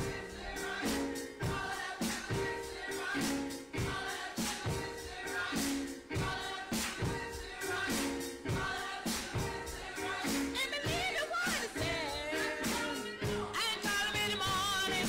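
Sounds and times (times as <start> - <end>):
gospel choir with band: 0.0 - 15.0.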